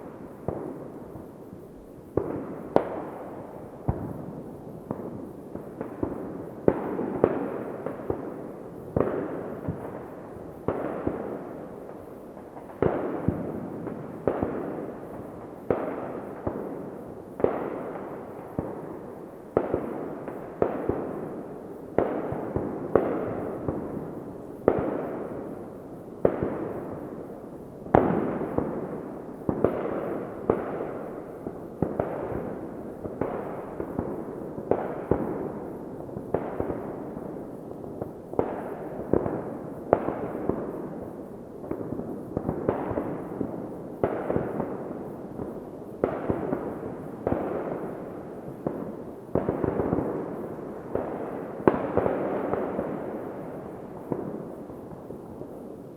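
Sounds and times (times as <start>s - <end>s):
fireworks bangs with echo: 0.0s - 55.7s.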